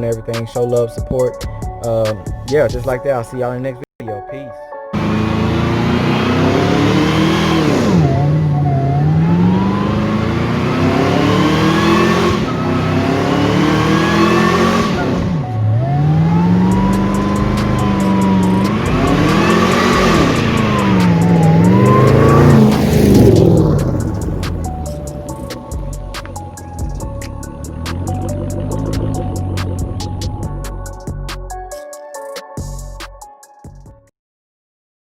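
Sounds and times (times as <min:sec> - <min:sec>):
car engine accelerating hard: 0:05.0 - 0:31.0.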